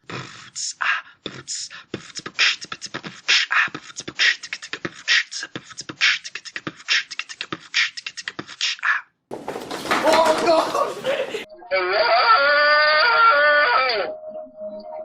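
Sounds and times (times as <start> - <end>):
person beatboxing: 0.0 - 9.2
mouth clicks: 0.1 - 9.2.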